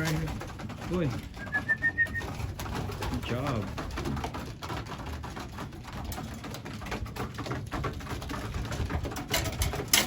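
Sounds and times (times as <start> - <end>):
pigeons tapping and shuffling: 0.0 - 10.0
pigeons cooing: 1.3 - 2.7.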